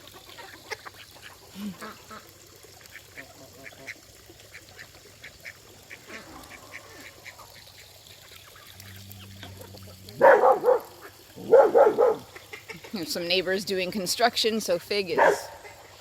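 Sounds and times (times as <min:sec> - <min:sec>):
ducks quacking softly: 0:00.0 - 0:11.3, 0:12.2 - 0:13.1.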